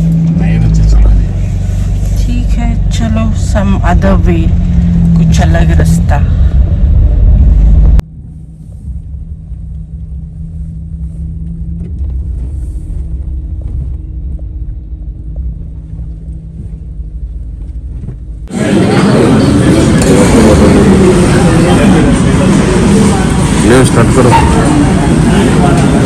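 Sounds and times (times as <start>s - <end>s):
car interior rumble: 0.0s - 18.6s.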